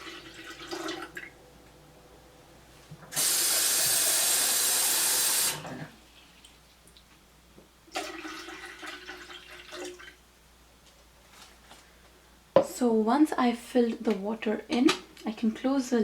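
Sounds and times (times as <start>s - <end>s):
water pouring into a kettle: 0.0s - 1.4s, 3.2s - 6.0s, 7.9s - 10.2s.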